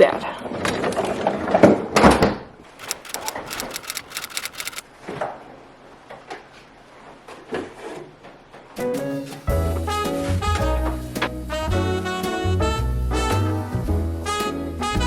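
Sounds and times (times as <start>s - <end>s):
sharp clicks and rattles: 2.8s - 4.8s.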